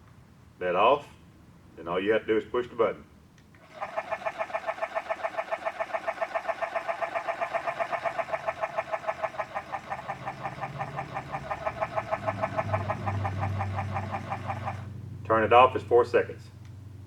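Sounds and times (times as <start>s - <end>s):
mechanical duck decoy clatter: 3.6s - 14.9s
low hum: 3.6s - 15.2s.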